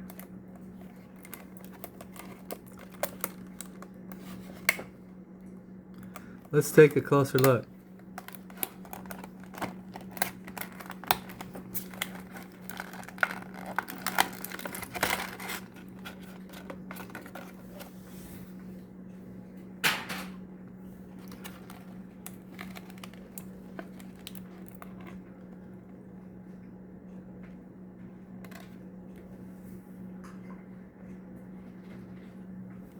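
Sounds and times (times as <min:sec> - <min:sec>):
plastic packaging crinkling: 0:00.0 - 0:05.0, 0:06.0 - 0:18.1, 0:21.0 - 0:25.7
steady low hum: 0:00.0 - 0:32.9.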